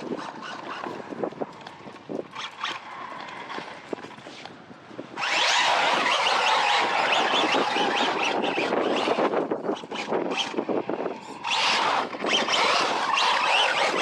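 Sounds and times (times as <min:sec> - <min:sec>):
tyre and dirt noise: 0:00.0 - 0:14.0
rc car motor whining: 0:05.1 - 0:14.0.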